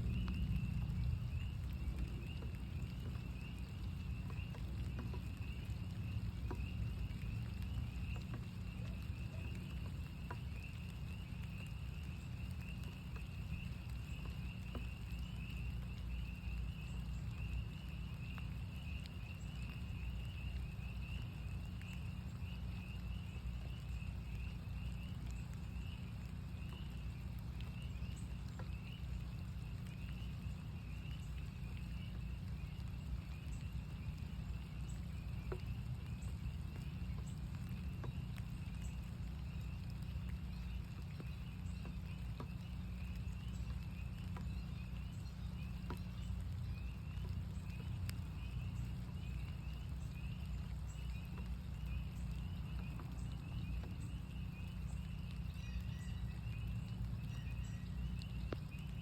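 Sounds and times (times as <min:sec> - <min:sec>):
spring peepers calling: 0:00.0 - 0:59.0
steady rain: 0:00.0 - 0:59.0
water drip ticks: 0:00.0 - 0:59.0.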